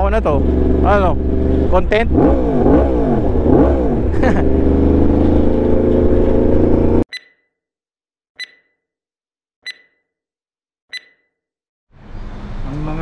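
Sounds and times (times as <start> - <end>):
motorcycle engine revving: 0.0 - 7.0
short high electronic beeps: 8.4 - 8.8, 9.6 - 10.0, 10.9 - 11.3.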